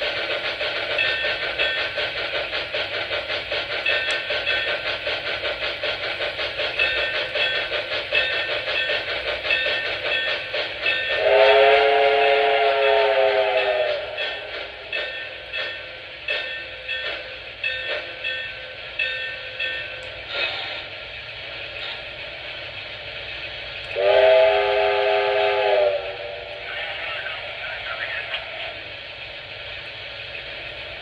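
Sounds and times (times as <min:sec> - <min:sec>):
locomotive chuffs: 0:00.0 - 0:31.0
toy train steam whistle chord: 0:11.0 - 0:14.5, 0:24.0 - 0:26.6.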